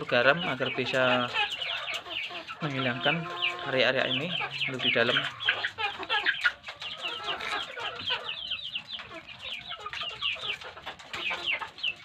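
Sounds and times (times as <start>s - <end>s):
chickens clucking: 0.0s - 12.0s
chicks peeping: 0.0s - 12.0s.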